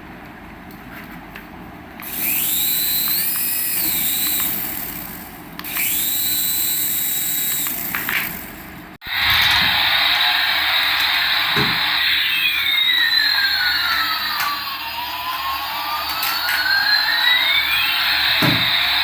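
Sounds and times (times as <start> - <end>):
loud steady whir: 2.0 - 19.0
toy electric motor whining: 2.0 - 19.0.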